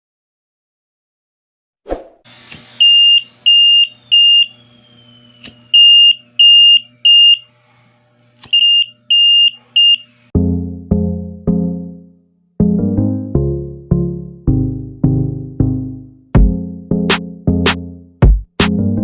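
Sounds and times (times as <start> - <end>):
smoke alarm beeping: 2.7 - 7.6, 8.5 - 10.3
keyboard chord music: 10.3 - 19.0.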